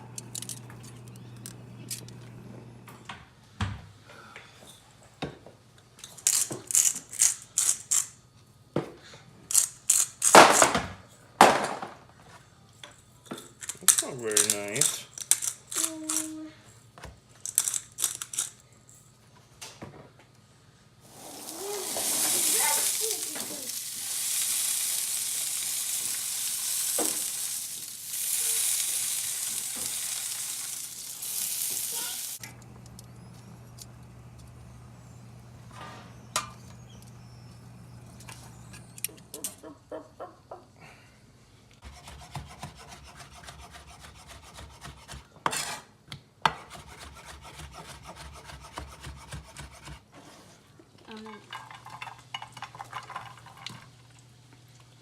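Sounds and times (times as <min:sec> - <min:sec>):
food sizzling in a pan: 0:21.0 - 0:32.4.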